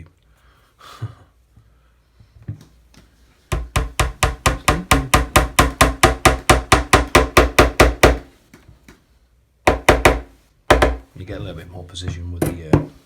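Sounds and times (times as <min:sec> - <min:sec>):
hammer tapping a pin into wood: 0:03.5 - 0:08.2, 0:09.7 - 0:11.0.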